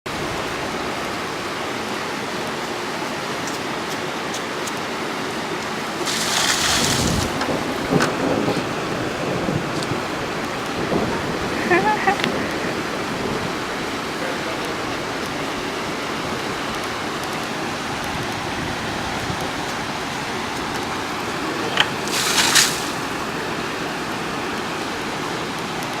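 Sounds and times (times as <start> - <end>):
flood water rushing: 0.1 - 26.0
loud hiss: 5.9 - 7.4, 21.3 - 23.6.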